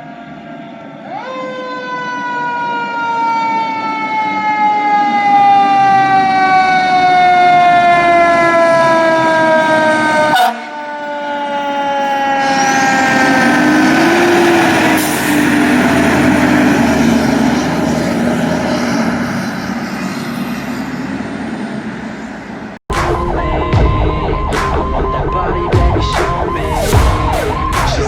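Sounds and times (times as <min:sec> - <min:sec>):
mechanical siren winding down: 0:00.0 - 0:21.4, 0:22.9 - 0:28.0
road noise: 0:00.0 - 0:28.0
heavy truck engine: 0:12.4 - 0:28.0
electronic siren cycling rapidly: 0:22.9 - 0:28.0.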